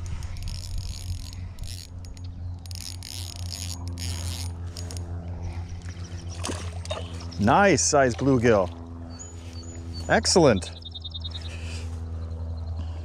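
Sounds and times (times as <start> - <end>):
fishing rod handling noise: 0.0 - 8.8
low hum: 0.0 - 13.0.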